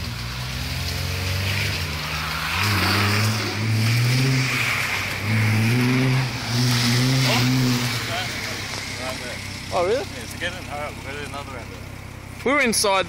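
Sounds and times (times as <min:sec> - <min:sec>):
car engine revving hard: 0:00.0 - 0:11.7
tyre hiss on wet road: 0:00.1 - 0:09.5.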